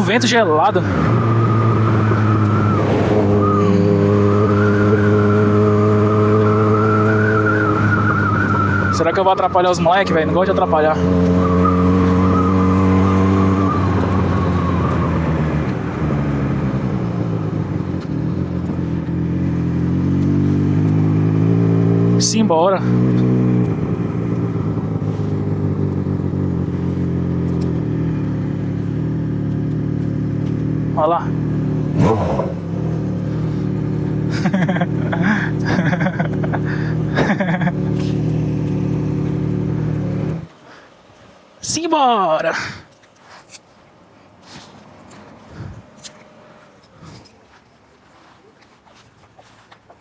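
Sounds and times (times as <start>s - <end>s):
motorcycle engine cruising: 0.0s - 43.2s, 44.3s - 50.0s
wavering high whistle: 0.8s - 9.8s, 11.3s - 15.9s.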